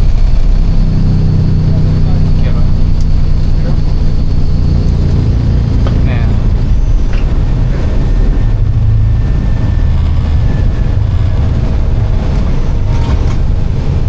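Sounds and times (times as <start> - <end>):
airliner cabin engine rumble: 0.0 - 14.0.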